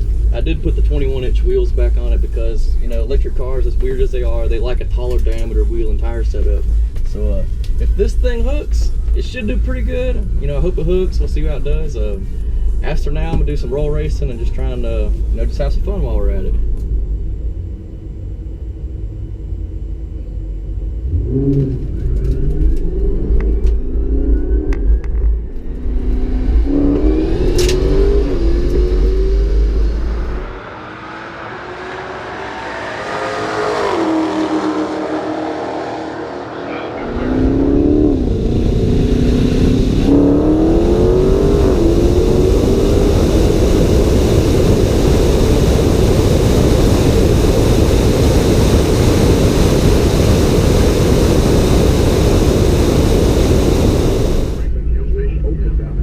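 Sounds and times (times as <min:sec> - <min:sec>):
cars accelerating hard: 0:21.0 - 0:54.7
rushing wind and road noise: 0:21.2 - 0:54.8.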